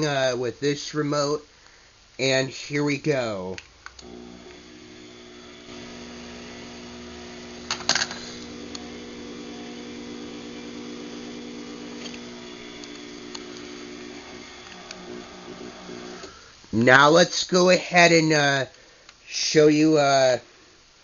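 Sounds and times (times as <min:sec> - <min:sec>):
sharp clicks: 0:03.5 - 0:04.6
garage door opener motor humming: 0:04.0 - 0:16.5.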